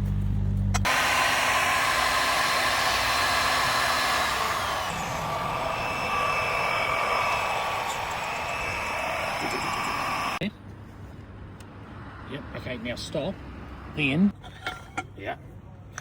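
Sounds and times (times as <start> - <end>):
low hum: 0.0 - 10.4
machine motor whining: 0.8 - 10.4.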